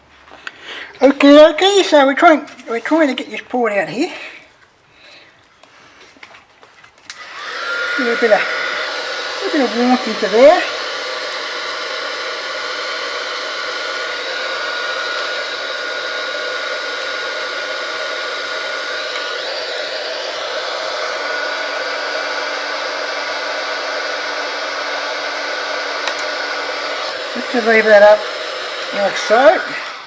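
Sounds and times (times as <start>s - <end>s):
hot-air tool blowing: 7.1s - 30.0s.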